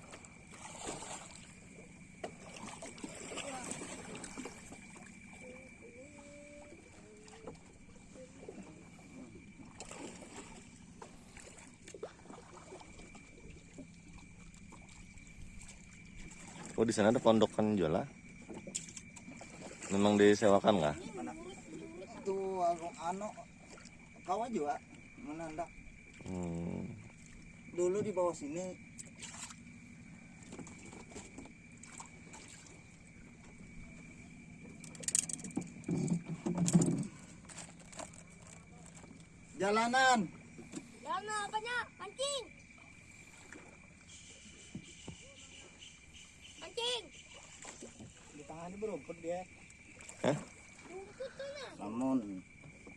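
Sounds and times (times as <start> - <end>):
boat motor running: 0.0 - 52.9
small knocks and clicks: 34.8 - 39.0.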